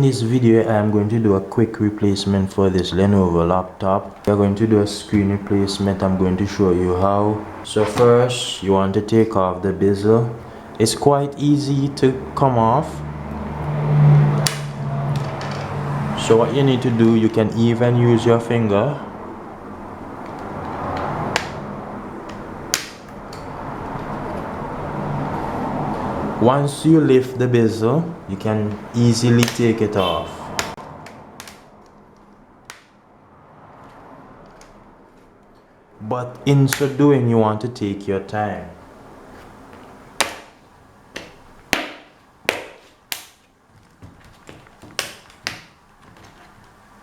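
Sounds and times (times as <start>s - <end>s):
plastic clips snapping: 14.4s - 14.7s, 22.2s - 24.1s, 30.6s - 33.0s
plastic rubbing and scraping: 42.8s - 47.0s.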